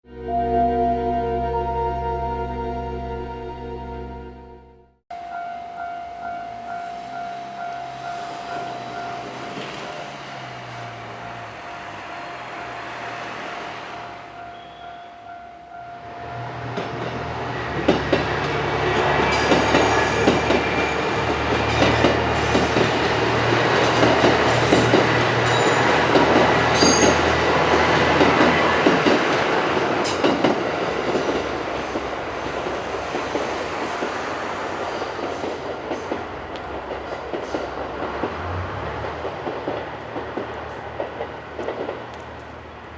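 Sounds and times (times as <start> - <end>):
train wheels clacking on rail joints: 16.7 - 42.7.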